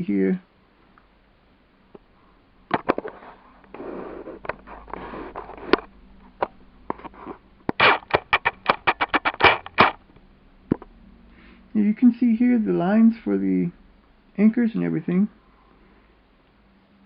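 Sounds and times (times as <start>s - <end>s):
rustling: 2.0s - 11.7s
plastic parts clicking: 5.7s - 10.0s.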